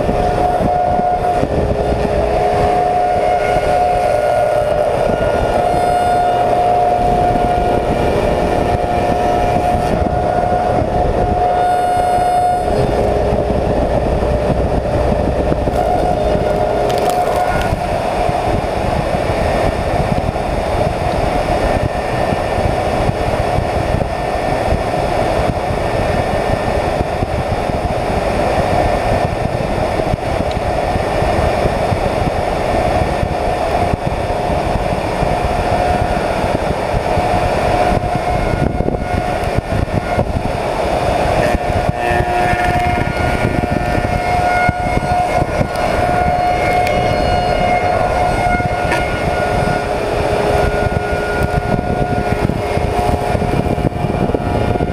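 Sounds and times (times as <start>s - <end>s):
cutter head whining through wood: 0.0s - 18.2s, 41.3s - 54.4s.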